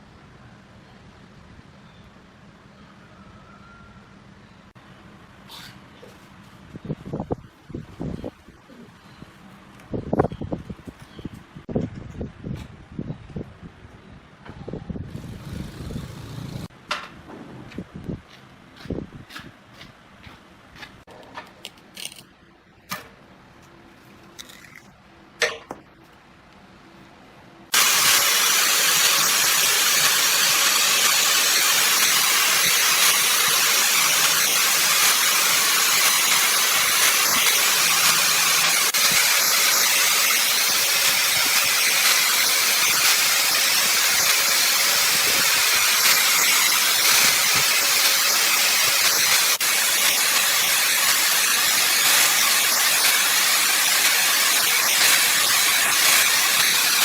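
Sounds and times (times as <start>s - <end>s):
wood lathe hissing rush: 27.7s - 57.0s.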